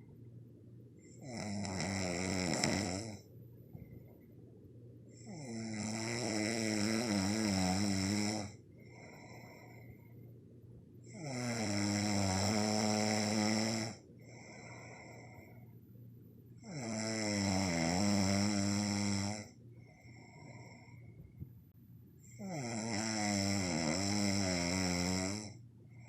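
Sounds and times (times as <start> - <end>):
quiet breaths: 0.0 - 26.0
person snoring: 1.1 - 3.2, 5.1 - 9.8, 11.1 - 15.6, 16.6 - 21.1, 22.2 - 25.6.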